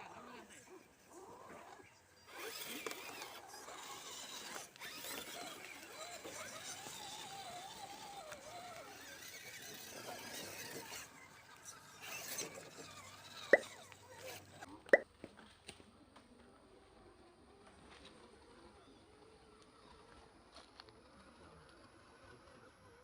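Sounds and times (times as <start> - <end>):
electric motor and gears whining: 1.1 - 14.7.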